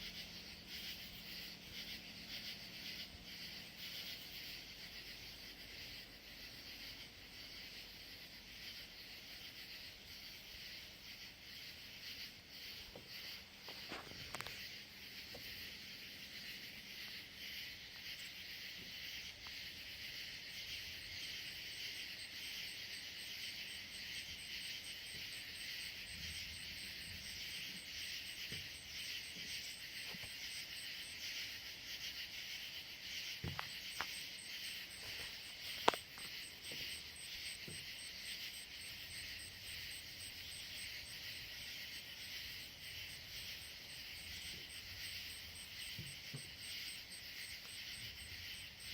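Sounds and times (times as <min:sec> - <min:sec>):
fast pulsing insect trill: 0:00.0 - 0:48.9
insects chirring: 0:00.0 - 0:48.9.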